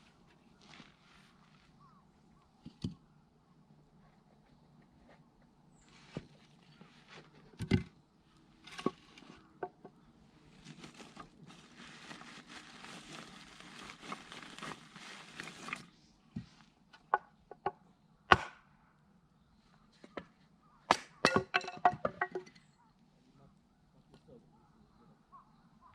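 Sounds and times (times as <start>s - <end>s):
rustling: 0.0s - 2.4s, 4.0s - 7.5s, 10.4s - 16.8s.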